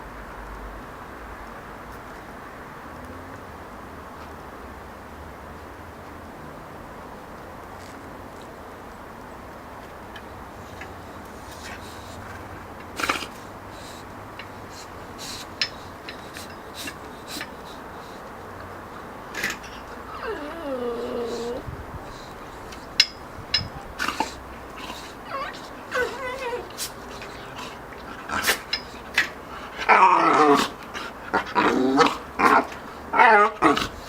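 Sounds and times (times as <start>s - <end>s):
puppies clicking and knocking: 10.8s - 18.7s, 19.3s - 21.6s, 22.2s - 34.0s
dog whine or growl: 19.4s - 23.2s, 24.0s - 29.0s, 29.8s - 34.0s.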